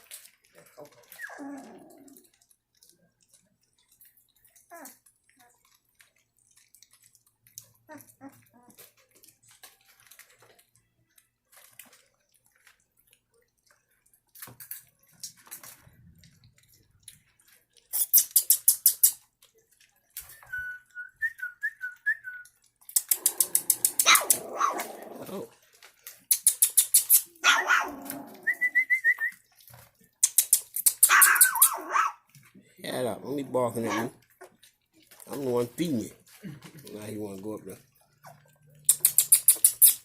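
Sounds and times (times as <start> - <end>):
puppies whining and yelping: 0.4 - 2.9, 6.6 - 10.4, 26.7 - 29.6, 30.8 - 32.1, 38.0 - 40.0
rapid smacking clicks: 22.8 - 24.5.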